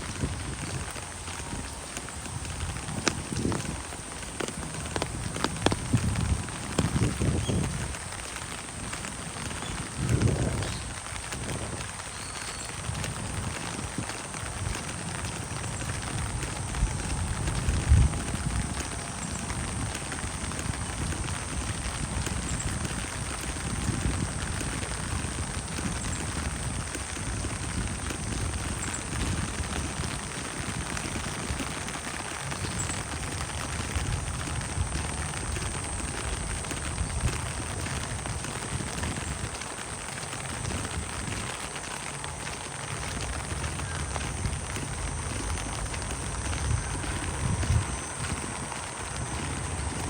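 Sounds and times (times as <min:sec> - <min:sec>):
steady rain pattering: 0:00.0 - 0:50.0
footsteps walking: 0:00.8 - 0:11.8, 0:23.2 - 0:50.0.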